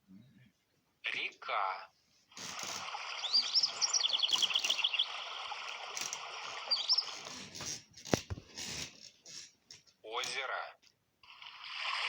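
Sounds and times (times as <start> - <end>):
small birds chirping: 2.3 - 8.5
sharp clicks: 2.4 - 7.3
flowing river water: 2.6 - 7.3.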